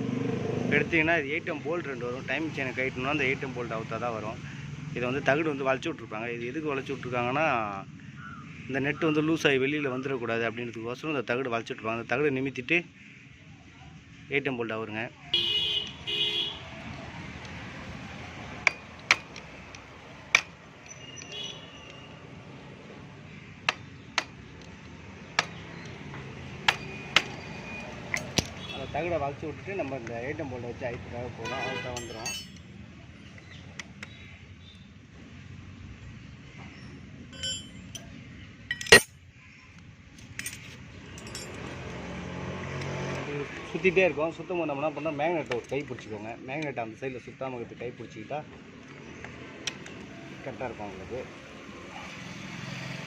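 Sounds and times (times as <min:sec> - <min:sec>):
steel tool clinking on metal: 0:18.7 - 0:19.8, 0:28.0 - 0:28.6, 0:31.8 - 0:32.7, 0:37.4 - 0:38.1, 0:38.7 - 0:39.1, 0:40.3 - 0:41.7
sharp metal clank: 0:31.9 - 0:32.6, 0:37.4 - 0:38.1, 0:38.7 - 0:39.1.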